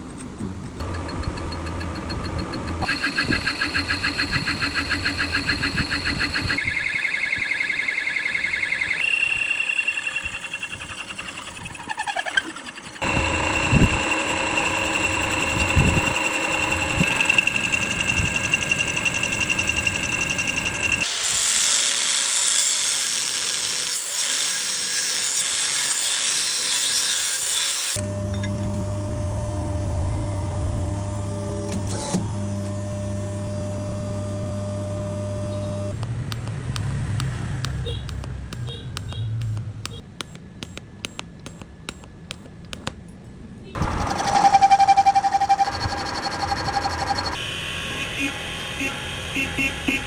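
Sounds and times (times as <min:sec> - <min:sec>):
lathe cutting metal: 0:12.6 - 0:29.8, 0:43.8 - 0:50.0.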